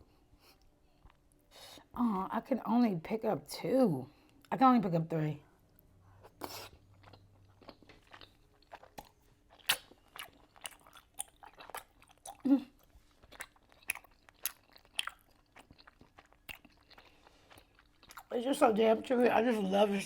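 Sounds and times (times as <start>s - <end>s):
mouth chewing: 6.1s - 18.4s.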